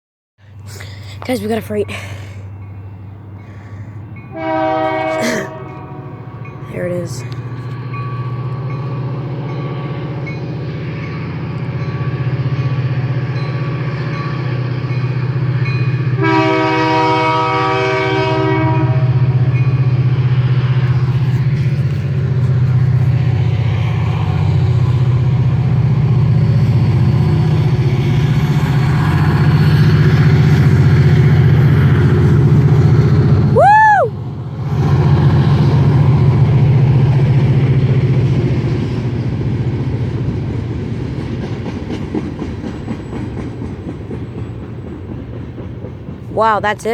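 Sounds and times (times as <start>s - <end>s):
freight train rumbling: 0.4s - 46.9s
locomotive horn: 4.3s - 6.4s, 16.0s - 19.4s.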